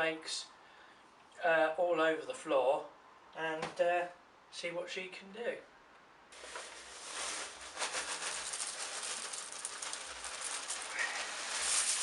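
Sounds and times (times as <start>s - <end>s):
cornflakes scattering on floor: 6.4s - 12.0s.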